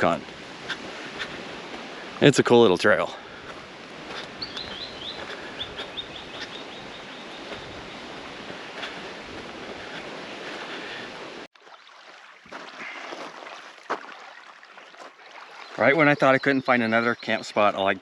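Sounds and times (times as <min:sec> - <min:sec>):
faint bird chirps: 0:04.2 - 0:08.1, 0:15.6 - 0:18.0.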